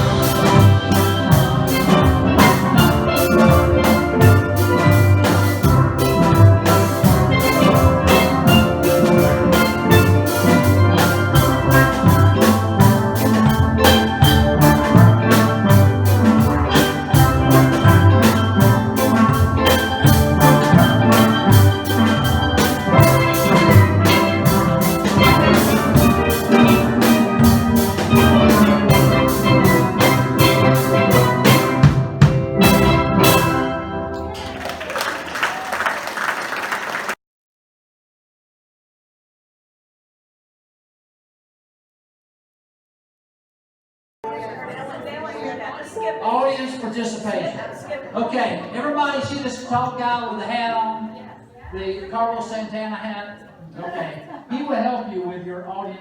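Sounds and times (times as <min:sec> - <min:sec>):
steel pan band playing: 0:00.0 - 0:37.2.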